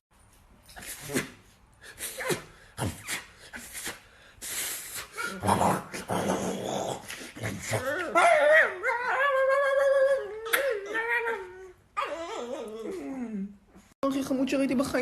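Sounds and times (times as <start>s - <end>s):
small dog yipping and whining: 7.8s - 13.5s.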